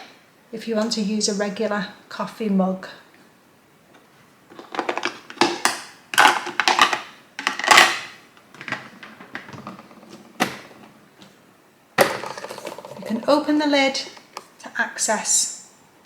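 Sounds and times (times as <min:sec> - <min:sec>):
plastic parts clicking and clattering: 0:04.5 - 0:11.3, 0:12.0 - 0:13.3.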